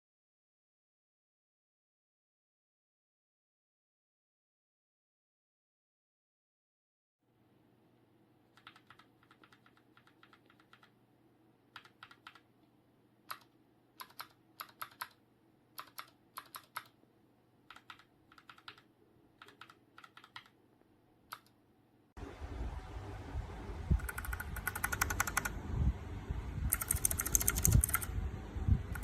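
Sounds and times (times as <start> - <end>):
mechanical keyboard typing: 8.5 - 11.0, 11.7 - 12.5, 13.3 - 15.2, 15.8 - 17.0, 17.7 - 20.6, 21.3 - 21.6, 24.0 - 25.6, 26.7 - 28.1.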